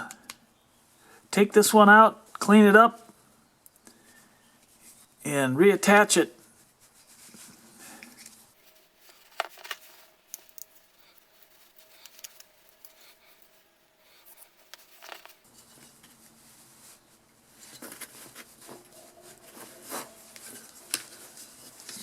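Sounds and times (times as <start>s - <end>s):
hands rustling: 6.4s - 22.0s.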